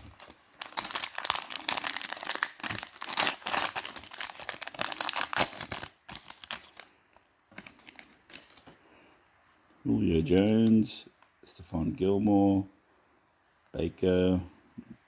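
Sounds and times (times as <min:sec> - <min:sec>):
wrapper crinkling and tearing: 0:00.0 - 0:06.9, 0:07.6 - 0:08.7.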